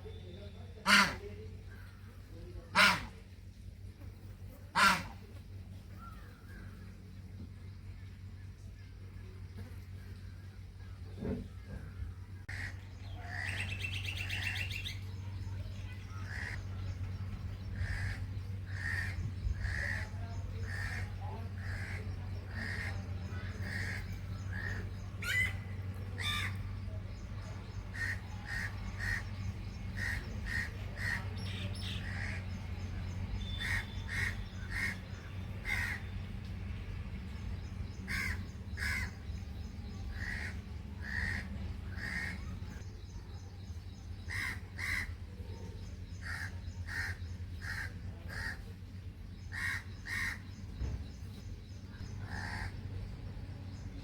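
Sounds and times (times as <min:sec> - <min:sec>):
steady low hum: 0:00.0 - 0:54.0
crows cawing: 0:12.5 - 0:13.8, 0:17.8 - 0:25.6, 0:27.9 - 0:29.3, 0:30.0 - 0:32.4, 0:33.4 - 0:36.1, 0:38.1 - 0:39.2, 0:40.1 - 0:42.5, 0:44.3 - 0:45.2, 0:46.2 - 0:48.6, 0:49.5 - 0:50.4, 0:52.2 - 0:52.8.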